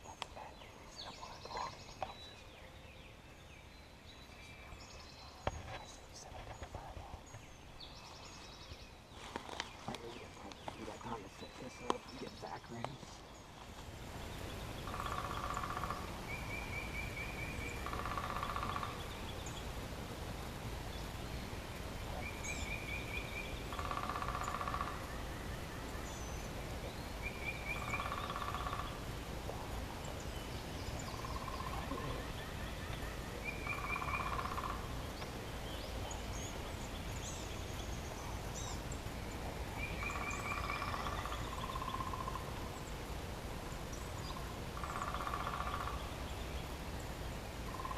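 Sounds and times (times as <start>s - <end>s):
bird trilling call: 33.4s - 34.9s.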